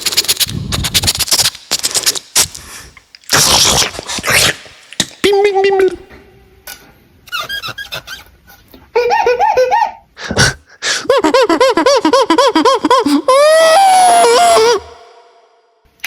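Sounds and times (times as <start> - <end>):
vocal hissing burst: 2.4 - 5.8
person imitating whoops: 11.0 - 15.4
person wailing like a siren: 13.3 - 15.0.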